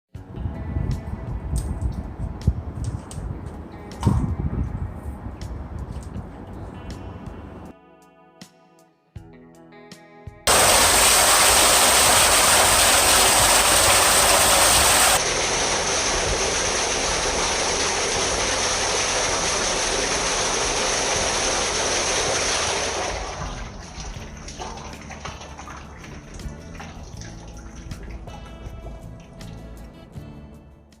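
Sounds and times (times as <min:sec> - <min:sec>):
water gushing into a tank: 0:10.5 - 0:29.5.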